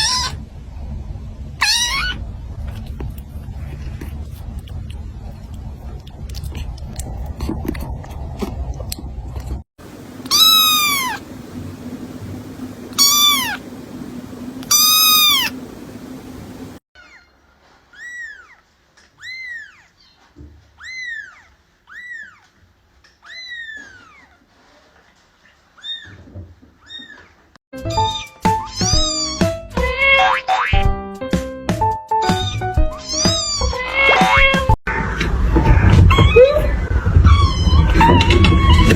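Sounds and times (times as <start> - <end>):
kittens meowing: 1.6 - 2.2, 9.9 - 16.8, 32.3 - 34.4
low rumbling noise: 2.2 - 16.8.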